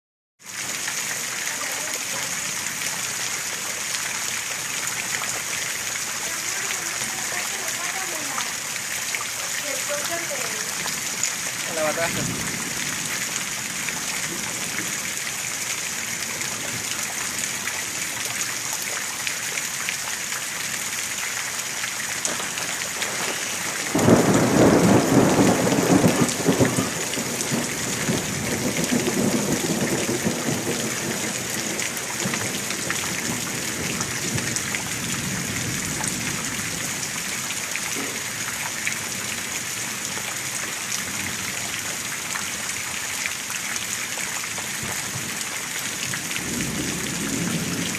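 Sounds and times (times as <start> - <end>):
heavy rain pouring: 0.4 - 47.9
thunderclap rumbling: 22.2 - 36.8, 46.1 - 47.9.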